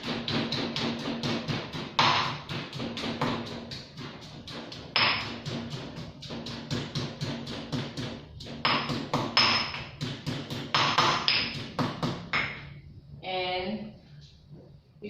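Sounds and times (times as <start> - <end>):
pestle pounding in a mortar: 0.0 - 12.7.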